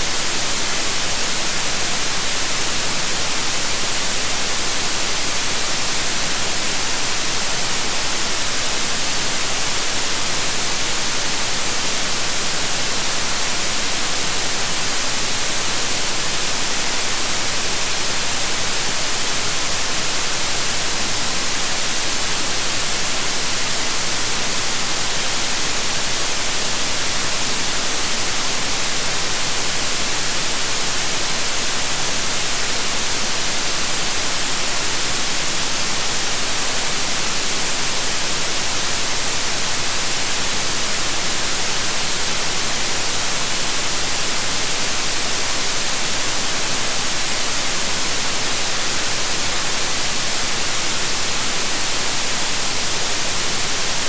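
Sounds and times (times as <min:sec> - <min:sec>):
white noise hiss: 0:00.0 - 0:54.0.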